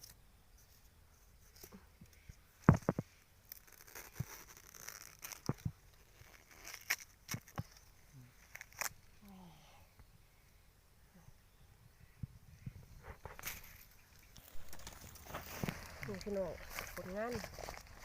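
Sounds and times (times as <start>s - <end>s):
bamboo cracking and knocking: 1.4s - 9.1s, 13.0s - 18.0s
rustling and tearing: 1.4s - 9.1s, 13.0s - 18.0s.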